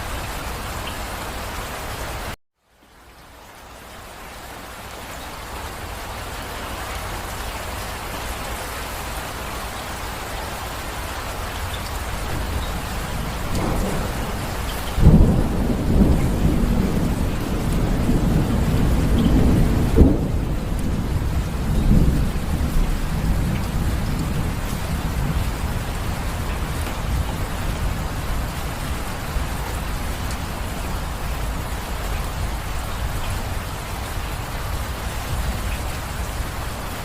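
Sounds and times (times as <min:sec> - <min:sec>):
steady rain: 0:00.0 - 0:37.0
thunder rumbling and clapping: 0:12.1 - 0:33.6.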